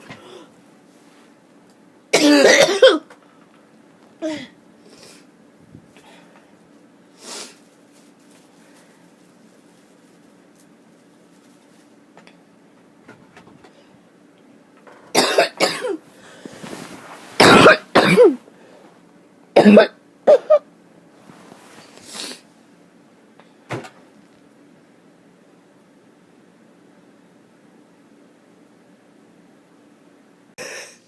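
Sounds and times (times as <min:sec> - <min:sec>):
person coughing harshly: 0:02.1 - 0:03.1, 0:15.1 - 0:16.0, 0:17.4 - 0:18.4, 0:19.6 - 0:20.7, 0:30.6 - 0:31.0.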